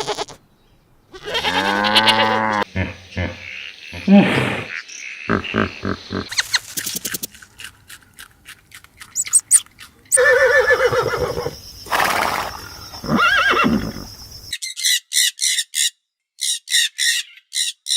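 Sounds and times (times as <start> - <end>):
horse whinnying: 1.2 - 2.7, 10.1 - 14.1.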